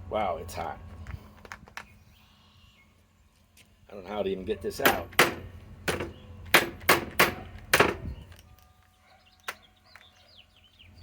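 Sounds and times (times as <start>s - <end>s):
metal striking metal: 4.7s - 8.0s.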